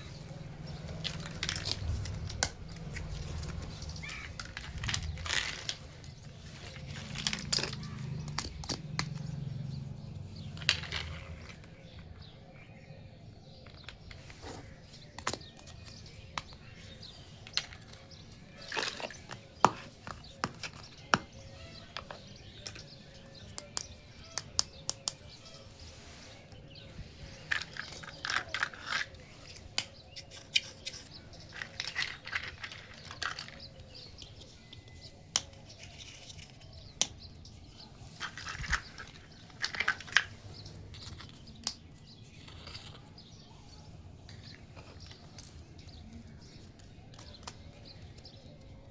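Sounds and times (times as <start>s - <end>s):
rustling: 0.0s - 9.5s
plastic toy pieces clicking: 3.8s - 9.2s, 10.5s - 11.7s, 17.4s - 25.4s, 27.4s - 37.2s, 38.2s - 43.1s.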